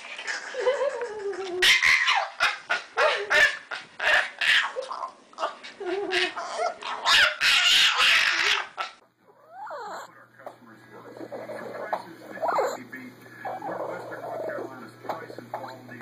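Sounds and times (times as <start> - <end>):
dog barking and whining: 1.6 - 10.1, 11.2 - 12.8.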